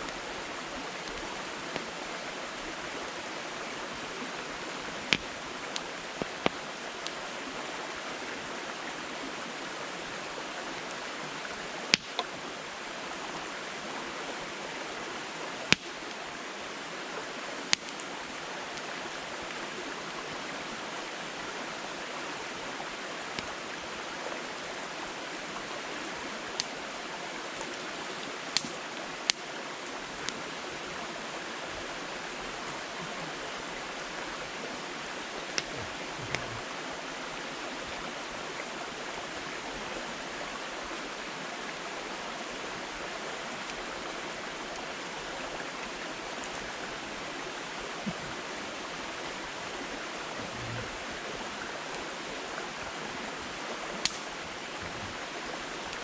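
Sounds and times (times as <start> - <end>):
campfire crackling pops: 5.0 - 7.2, 11.9 - 12.4, 15.6 - 16.2, 17.7 - 18.0, 26.5 - 26.8, 28.4 - 29.5, 35.4 - 36.6, 54.0 - 55.0.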